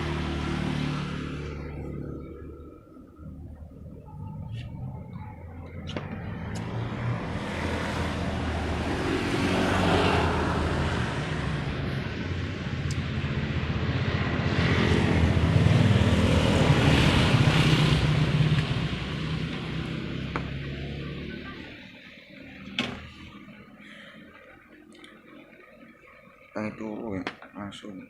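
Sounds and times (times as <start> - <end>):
vehicle engines passing: 0.0 - 27.0.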